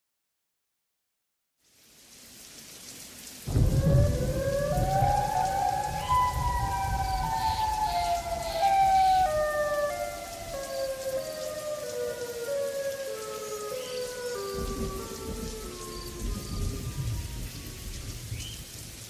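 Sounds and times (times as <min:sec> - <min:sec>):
rain: 0:01.6 - 0:19.0
gliding synth melody: 0:03.5 - 0:18.3.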